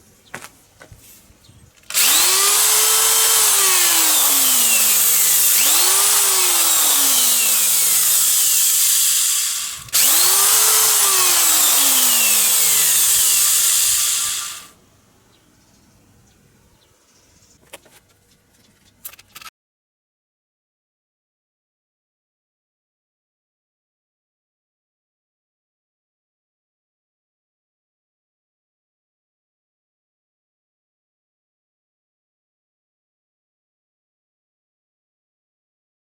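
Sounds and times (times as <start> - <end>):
electric drill whirring: 1.8 - 14.7.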